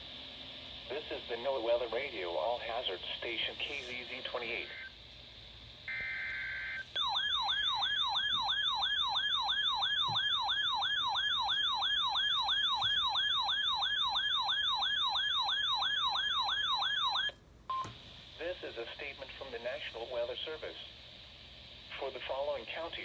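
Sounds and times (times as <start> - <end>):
warbling siren-like alert tone: 5.9 - 17.3.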